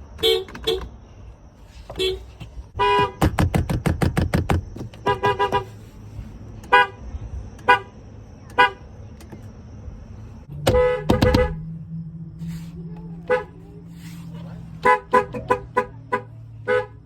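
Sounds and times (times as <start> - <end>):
car horn honking: 0.1 - 0.9, 1.9 - 3.3, 5.0 - 5.8, 6.6 - 7.0, 7.6 - 8.9, 10.5 - 11.8, 13.2 - 13.6, 14.8 - 17.0.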